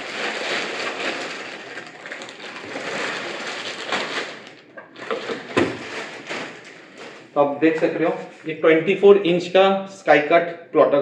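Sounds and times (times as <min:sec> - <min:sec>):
plastic wrap crinkling: 0:00.0 - 0:07.4.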